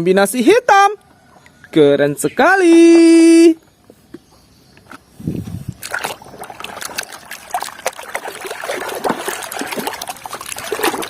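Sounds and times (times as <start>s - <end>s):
water splashing and trickling: 2.3s - 3.6s, 4.8s - 11.0s.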